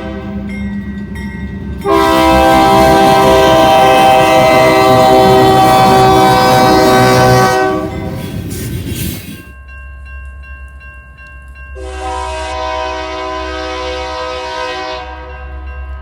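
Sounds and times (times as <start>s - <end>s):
locomotive air horn chord: 0.0s - 0.5s, 1.8s - 8.2s, 11.8s - 16.0s
rail noise: 0.0s - 16.0s.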